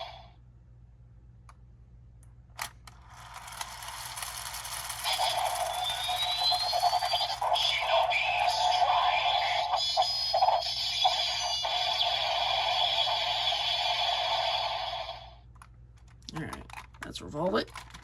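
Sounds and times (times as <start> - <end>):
toy belt electronic music: 3.2 - 15.3
rising whistle-like tone: 5.0 - 15.3.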